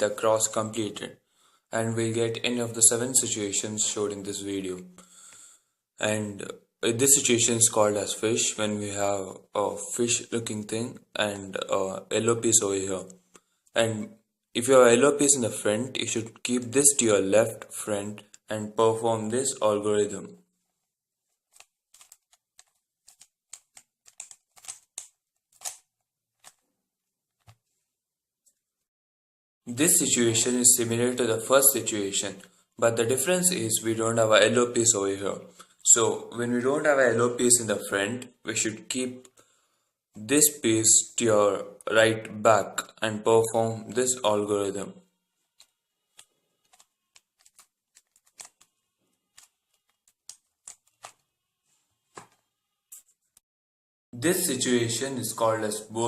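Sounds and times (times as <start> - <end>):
puzzle cube plastic clicks: 21.5 - 26.6, 45.6 - 48.7.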